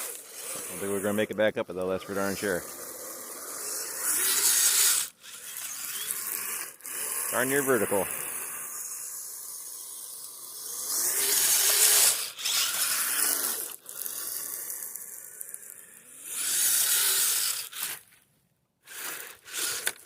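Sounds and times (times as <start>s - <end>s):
electric motor whining: 0.0s - 18.0s, 18.9s - 20.0s.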